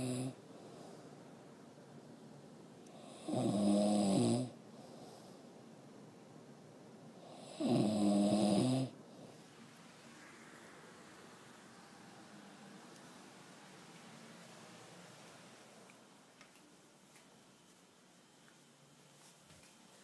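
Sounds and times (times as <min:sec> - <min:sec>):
man snoring: 0:00.0 - 0:00.4, 0:03.0 - 0:04.6, 0:07.2 - 0:09.0.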